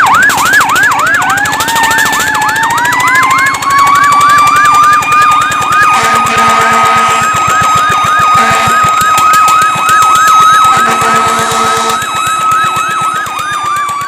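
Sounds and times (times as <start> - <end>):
fire truck siren yelping: 0.0 - 14.0
air horn blasts: 5.9 - 7.4, 8.4 - 8.9, 10.7 - 12.1.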